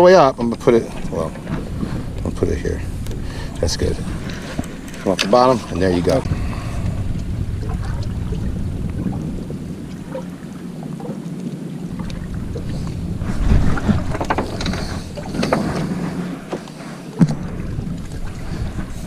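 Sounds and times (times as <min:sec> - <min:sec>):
boat engine rumble: 0:00.0 - 0:19.0
wind on microphone: 0:00.0 - 0:19.0
low thump: 0:17.2 - 0:18.2.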